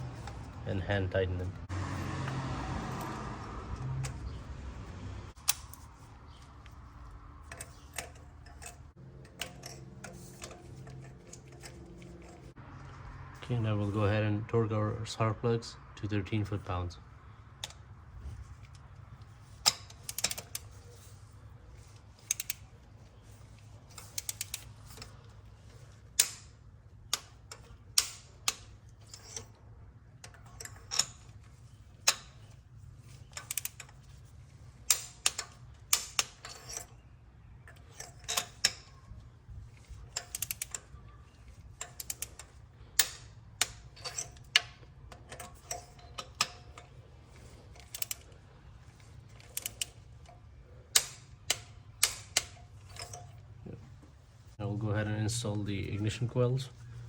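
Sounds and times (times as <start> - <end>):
ratcheting torque wrench clicking: 19.5 - 21.0, 22.0 - 22.7, 23.3 - 26.5, 30.2 - 34.1, 37.7 - 50.3.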